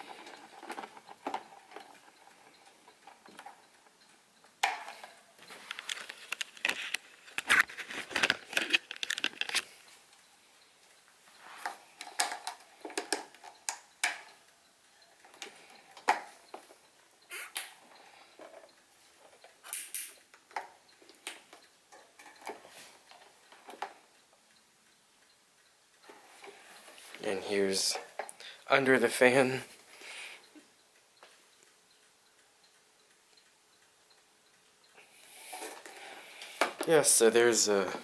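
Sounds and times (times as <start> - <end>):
plastic fan being handled: 0.0 - 3.6, 4.6 - 9.8.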